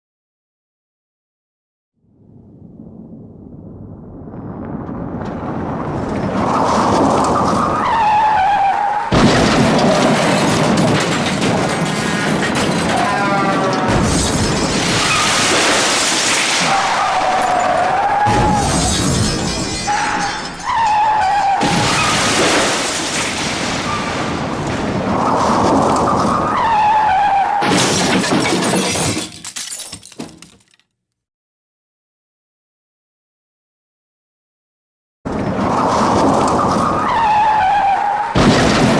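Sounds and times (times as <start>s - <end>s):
crash impact: 9.1s - 13.2s, 13.8s - 26.0s, 38.4s - 38.9s
glass shattering: 9.1s - 24.1s, 27.6s - 30.8s
debris crunching and clattering: 9.1s - 26.3s, 27.6s - 30.9s, 38.4s - 38.9s.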